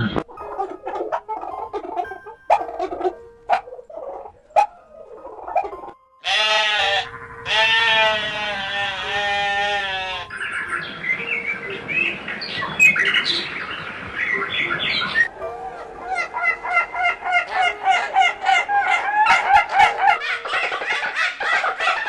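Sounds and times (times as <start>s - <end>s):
animal bleating calls: 6.2s - 10.3s.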